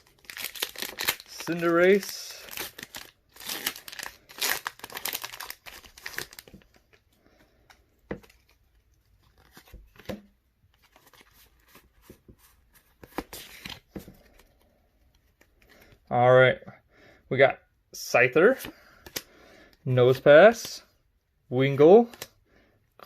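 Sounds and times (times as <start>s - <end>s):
foil wrapper tearing and crinkling: 0.0s - 6.6s.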